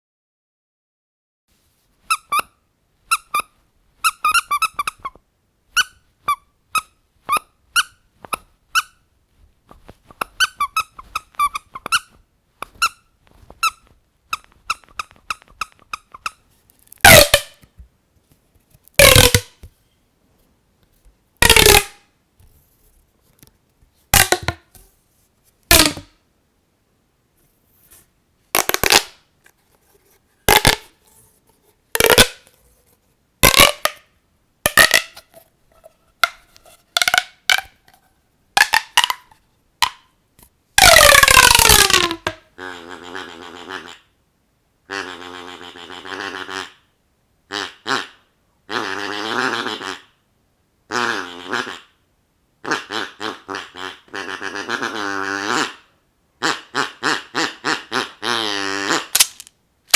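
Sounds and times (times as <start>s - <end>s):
squeaky dog toy squeaking: 2.0s - 9.1s, 10.2s - 17.7s, 19.0s - 19.6s, 21.4s - 22.0s, 24.1s - 24.8s, 25.7s - 26.1s, 30.5s - 30.9s, 32.0s - 32.5s, 33.4s - 34.0s, 34.7s - 35.3s, 36.2s - 38.0s, 38.6s - 40.0s, 40.8s - 42.4s.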